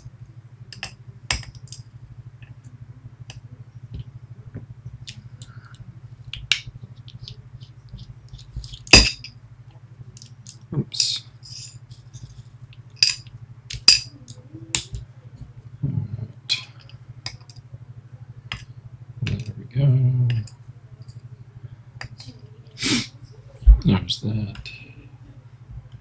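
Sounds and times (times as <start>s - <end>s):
steady low hum: 0.0s - 26.0s
metallic clicks of lock parts: 13.0s - 14.1s.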